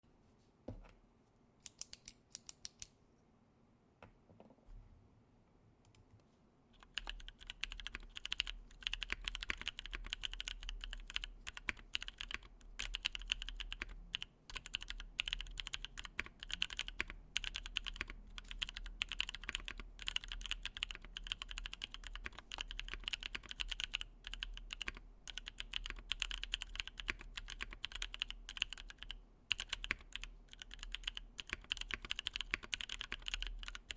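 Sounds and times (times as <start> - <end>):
mechanical keyboard typing: 6.8 - 33.9.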